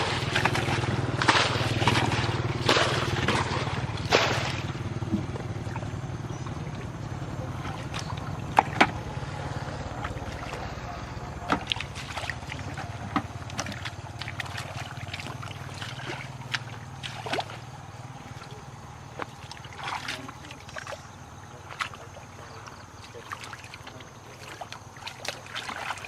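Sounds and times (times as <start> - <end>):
steady low hum: 0.0 - 26.0
water sloshing around boat: 0.0 - 26.0
sharp knocks and clicks: 7.9 - 9.0.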